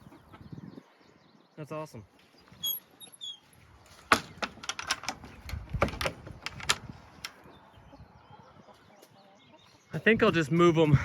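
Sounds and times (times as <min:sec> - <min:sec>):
sharp clicks and knocks: 0:04.0 - 0:07.4.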